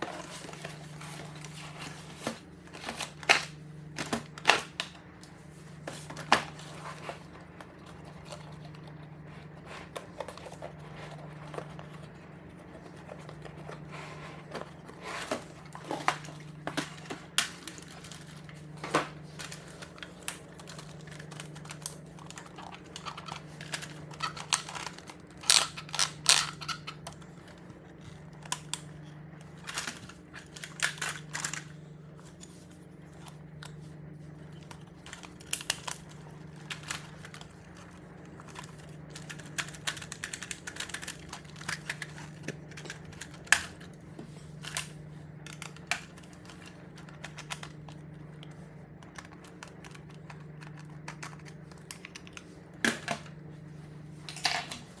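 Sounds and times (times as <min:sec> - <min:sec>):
plastic toy and packaging clicks: 0:15.3 - 0:31.8, 0:34.7 - 0:43.9, 0:44.6 - 0:53.4.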